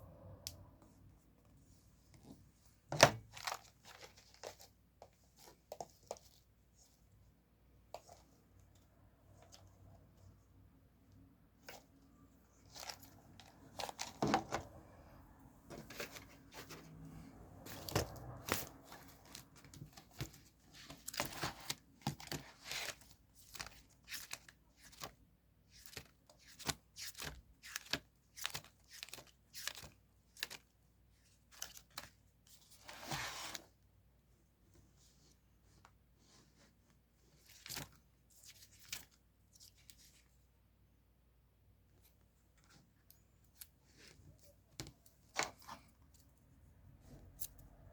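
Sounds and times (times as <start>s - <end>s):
paper crinkling and rustling: 15.7s - 30.8s.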